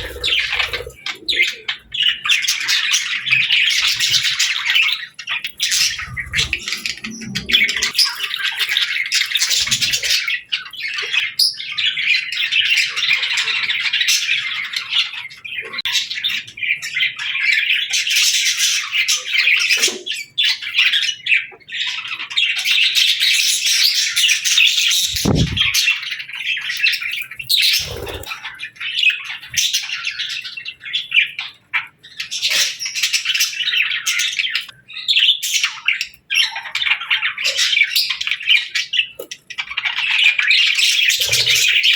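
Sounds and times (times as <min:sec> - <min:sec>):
budgerigars chattering and warbling: 0:00.0 - 0:41.9
low thuds: 0:25.1 - 0:25.8.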